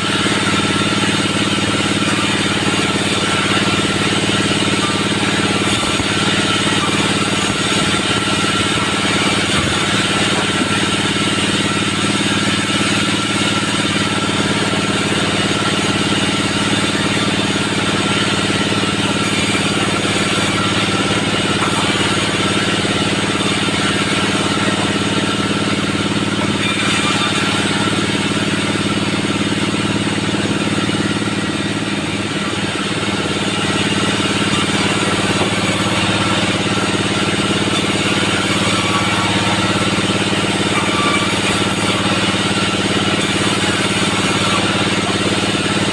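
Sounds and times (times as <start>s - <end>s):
sawmill machinery drone: 0.0s - 45.9s.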